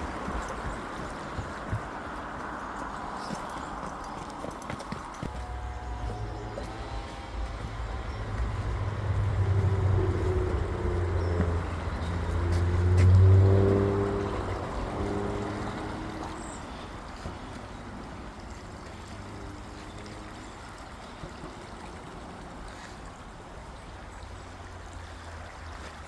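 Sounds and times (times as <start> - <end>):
vehicle engine: 5.1 - 26.0
steady rushing noise: 5.2 - 16.7.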